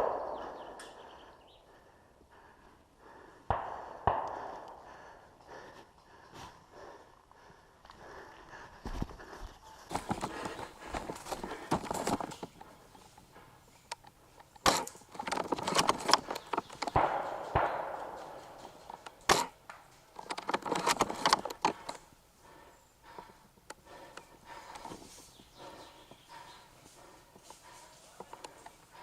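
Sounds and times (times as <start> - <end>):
footsteps through dry undergrowth: 5.0 - 13.8, 23.9 - 29.0.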